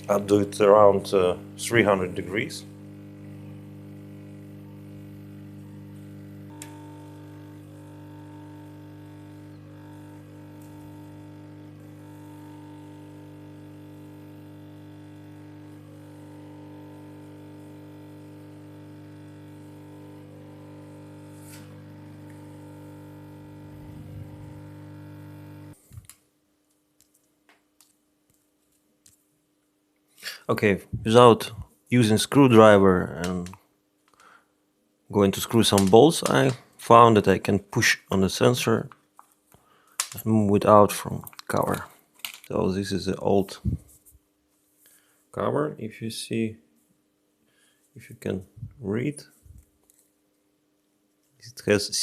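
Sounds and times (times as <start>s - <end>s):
heater electric hum: 0.0s - 26.2s, 35.1s - 39.0s, 39.7s - 44.2s.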